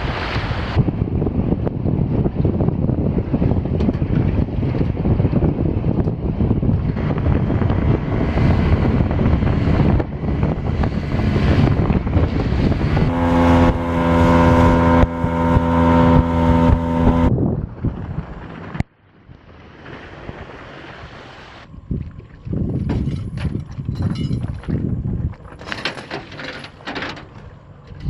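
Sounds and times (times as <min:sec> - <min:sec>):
wind buffeting microphone: 0:00.0 - 0:25.8
boat motor running: 0:01.9 - 0:18.8.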